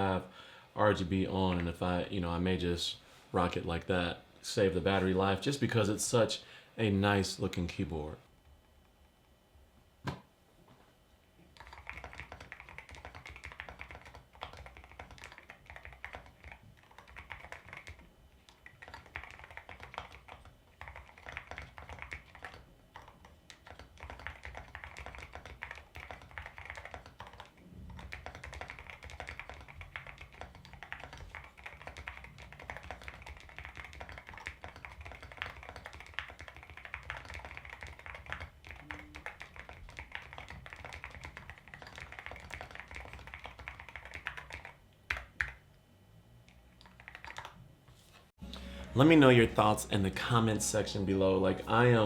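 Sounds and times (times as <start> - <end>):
mechanical keyboard typing: 11.6 - 45.6, 46.8 - 47.6.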